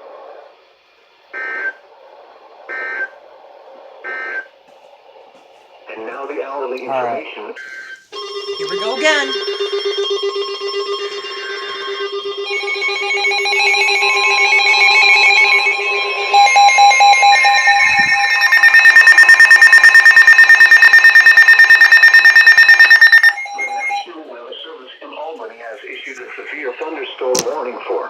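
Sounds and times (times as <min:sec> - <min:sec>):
electronic emergency alert tones: 0:07.6 - 0:24.1.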